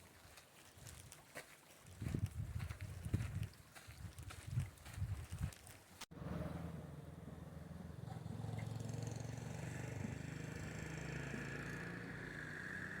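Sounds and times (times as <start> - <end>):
vehicle engine humming: 6.2 - 13.0.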